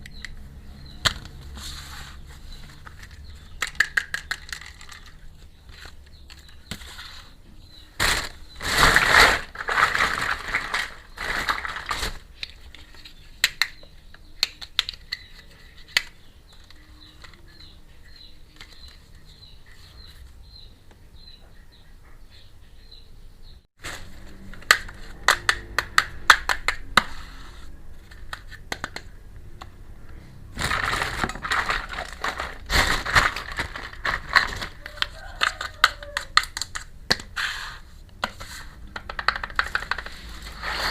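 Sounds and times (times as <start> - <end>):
plastic toy pieces clicking: 2.9 - 5.2, 33.2 - 37.3, 38.9 - 40.2
plastic packaging crinkling: 8.0 - 13.0, 30.5 - 36.9.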